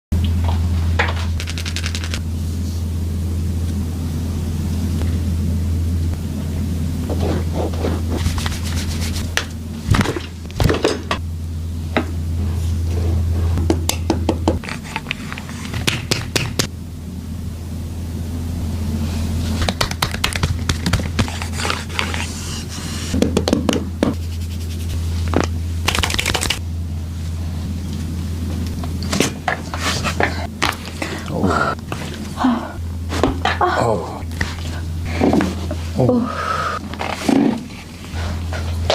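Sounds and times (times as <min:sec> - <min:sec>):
steady low hum: 0:00.1 - 0:38.9
hands rubbing on body: 0:07.1 - 0:09.4, 0:24.2 - 0:25.3.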